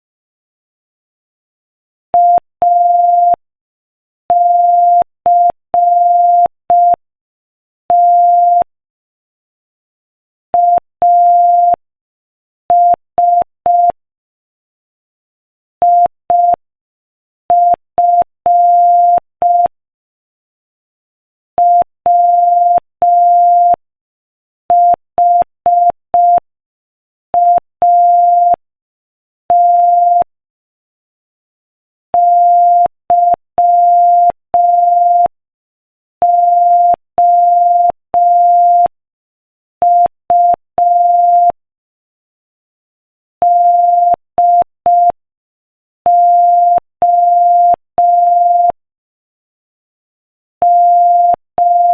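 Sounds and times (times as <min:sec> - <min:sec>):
morse code beeps: 0:21.6 - 0:23.8, 0:36.2 - 0:38.9, 0:39.8 - 0:41.6, 0:43.4 - 0:45.2, 0:46.1 - 0:48.8, 0:50.6 - 0:51.9.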